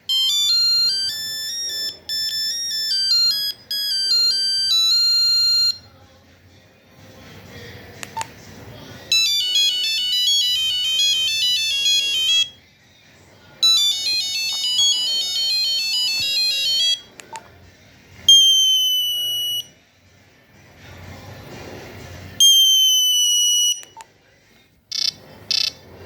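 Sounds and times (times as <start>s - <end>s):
beeping phone ringtone melody: 0.0s - 5.9s, 9.1s - 12.6s, 13.6s - 17.1s, 18.3s - 19.8s, 22.4s - 24.0s, 24.9s - 25.8s
held beep: 0.1s - 5.8s, 18.3s - 19.7s, 22.4s - 24.0s.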